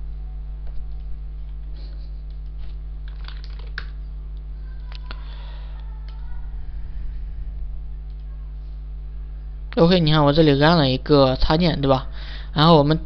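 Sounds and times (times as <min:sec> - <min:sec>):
low electrical hum: 0:00.0 - 0:13.0
computer keyboard typing: 0:03.0 - 0:04.0
scattered clicks: 0:08.0 - 0:08.3.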